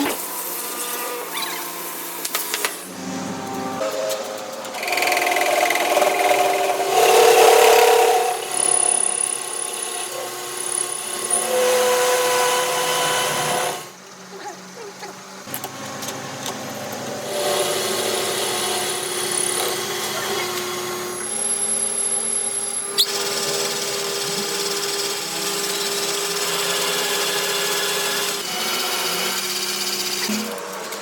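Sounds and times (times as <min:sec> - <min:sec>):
power tools working metal: 0:00.0 - 0:14.0, 0:15.3 - 0:31.0.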